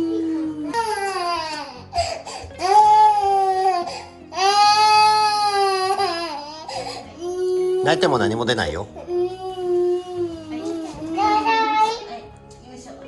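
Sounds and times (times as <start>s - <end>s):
toddler crying: 0.0s - 8.1s, 9.0s - 12.3s.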